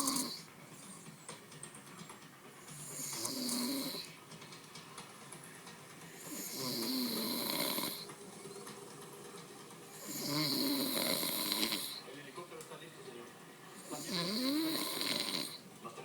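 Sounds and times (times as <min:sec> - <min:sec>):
person snoring: 0:00.0 - 0:00.5, 0:02.7 - 0:04.2, 0:06.2 - 0:08.1, 0:09.9 - 0:12.0, 0:13.8 - 0:15.6
quiet breathing: 0:00.0 - 0:01.4, 0:02.6 - 0:04.3, 0:05.4 - 0:12.2, 0:13.3 - 0:15.7.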